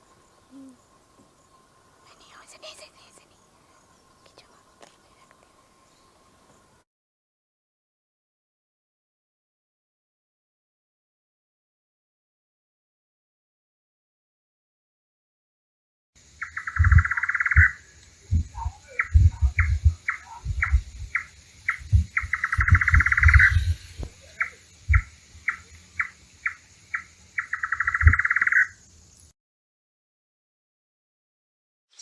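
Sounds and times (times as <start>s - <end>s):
bird calling with trills: 16.4s - 28.8s
low thumps: 18.3s - 24.2s, 24.9s - 25.1s.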